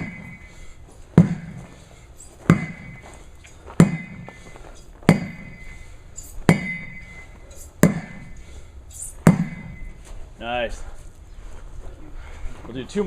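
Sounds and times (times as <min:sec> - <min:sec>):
sledgehammer striking a tire: 0:00.0 - 0:08.5, 0:09.2 - 0:10.0.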